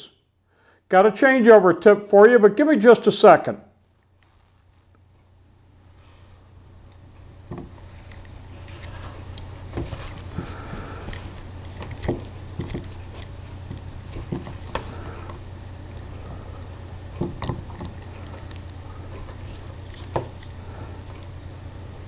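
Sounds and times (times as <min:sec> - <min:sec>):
steady low hum: 0:00.0 - 0:22.0
hose fittings clicking and knocking: 0:07.5 - 0:16.1, 0:17.1 - 0:20.5.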